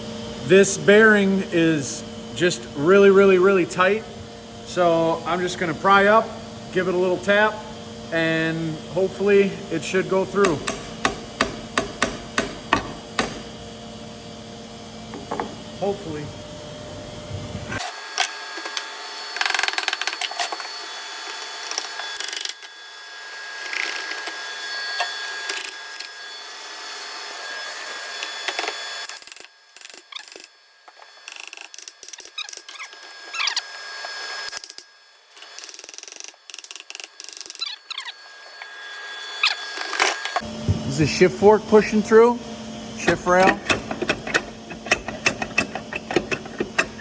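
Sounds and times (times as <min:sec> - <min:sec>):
hand tools clicking on metal: 0:21.3 - 0:22.8, 0:23.6 - 0:24.4, 0:25.0 - 0:26.1, 0:28.4 - 0:30.5, 0:31.3 - 0:33.6, 0:34.5 - 0:38.1.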